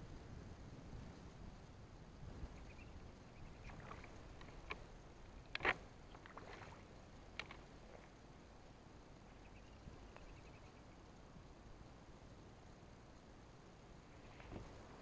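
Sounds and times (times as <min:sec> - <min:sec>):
splashes in shallow water: 0:05.6 - 0:08.1.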